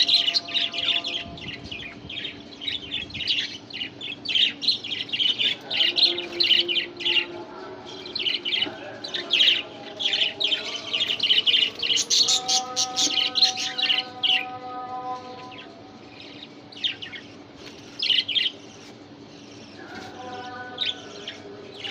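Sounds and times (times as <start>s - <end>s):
budgerigars chirping: 8.1s - 14.4s.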